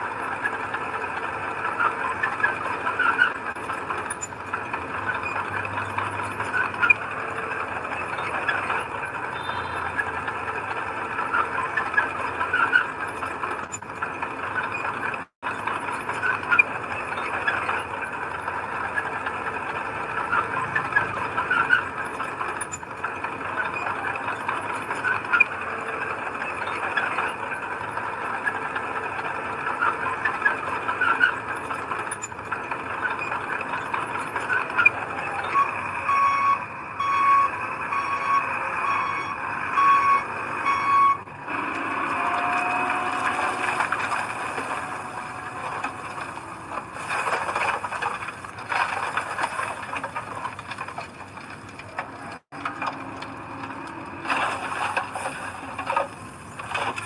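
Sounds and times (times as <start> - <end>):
diesel earthmoving machinery: 0.0 - 57.0
machinery squeaks and rattles: 0.0 - 57.0.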